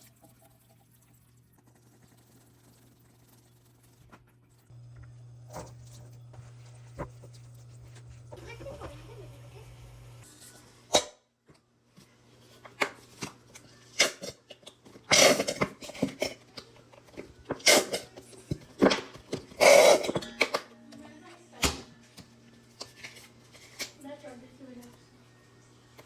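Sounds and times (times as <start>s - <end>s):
utensils and containers knocking: 18.5s - 20.8s.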